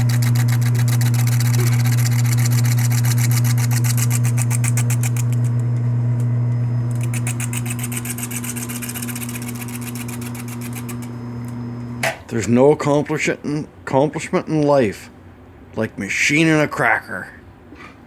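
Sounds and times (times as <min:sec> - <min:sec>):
lathe motor hum: 0:00.0 - 0:12.1.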